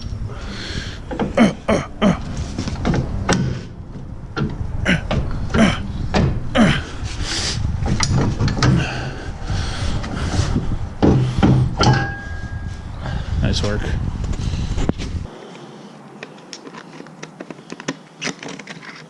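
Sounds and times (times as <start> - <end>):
metallic knocks and clanks: 7.8 - 9.0, 11.0 - 12.8.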